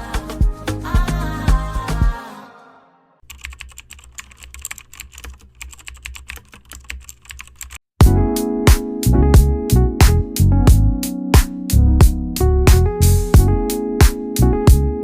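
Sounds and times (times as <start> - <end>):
loud music: 0.0 - 2.4
typing on a computer keyboard: 3.2 - 7.8.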